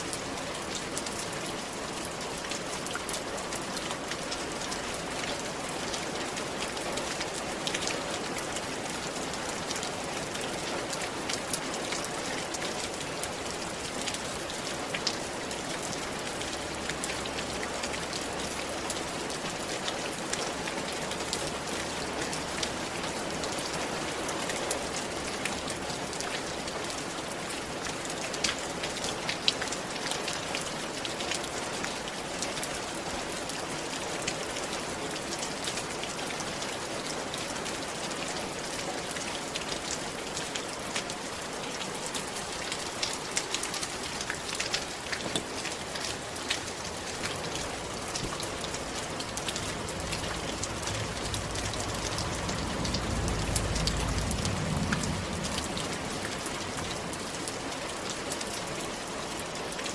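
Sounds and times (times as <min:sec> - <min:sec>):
rain on a roof: 0:00.0 - 0:59.9
low rumble: 0:49.7 - 0:56.5.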